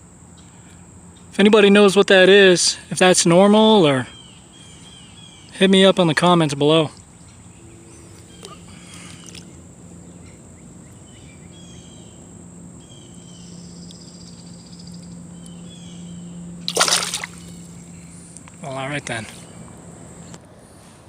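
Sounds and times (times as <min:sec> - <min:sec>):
faint bird chirps: 0:07.0 - 0:16.6
creek water trickling: 0:16.6 - 0:19.2.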